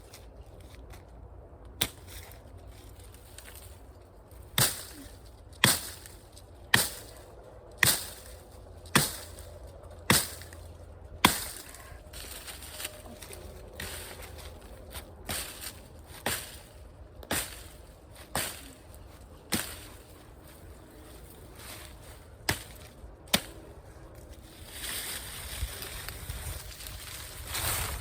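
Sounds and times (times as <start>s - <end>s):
axe chopping wood: 1.8s - 2.2s, 4.6s - 5.0s, 5.6s - 6.1s, 6.7s - 7.1s, 7.8s - 9.4s, 10.1s - 10.5s, 11.2s - 11.8s, 15.3s - 16.6s, 17.2s - 18.8s, 19.5s - 20.0s, 22.4s - 23.6s.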